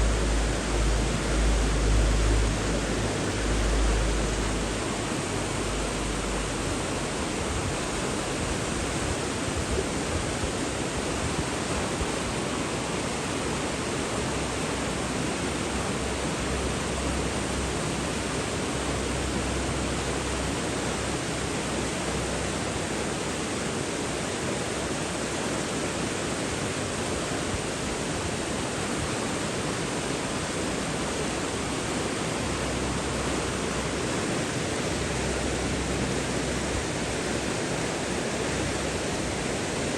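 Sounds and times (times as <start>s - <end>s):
deep low rumble: 0.0s - 8.8s
rushing water: 0.0s - 39.9s.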